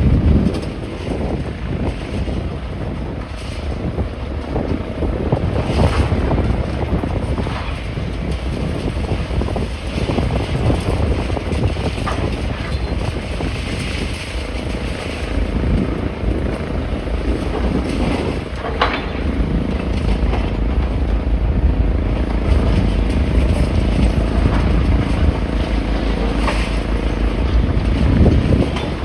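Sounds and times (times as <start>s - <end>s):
wind buffeting microphone: 0.0s - 29.0s
road traffic: 13.8s - 29.0s.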